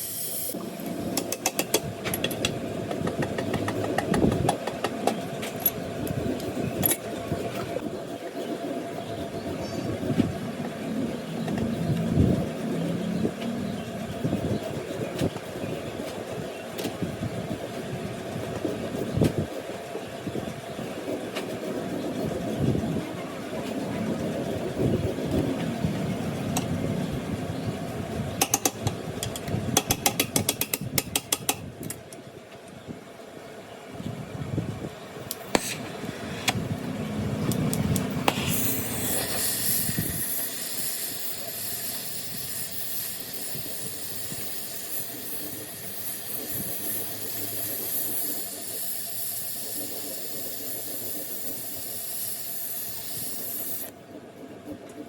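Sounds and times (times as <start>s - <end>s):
steady high hiss: 38.1s - 54.0s.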